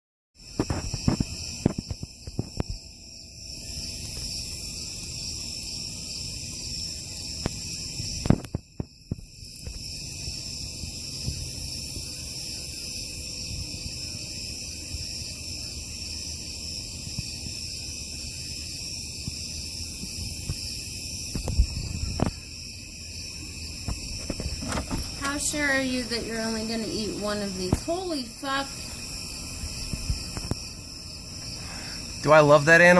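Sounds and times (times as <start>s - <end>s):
crickets and insects trilling: 0.4s - 32.9s
sharp thumps: 23.8s - 25.8s.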